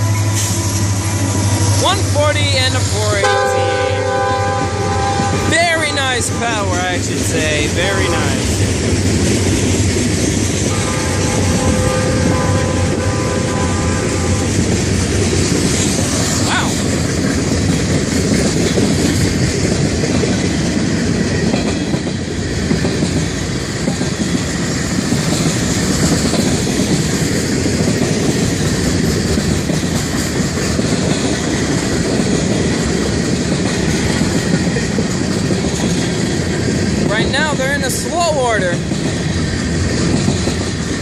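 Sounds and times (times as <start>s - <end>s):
wheels clattering over rail joints: 0.0s - 41.0s.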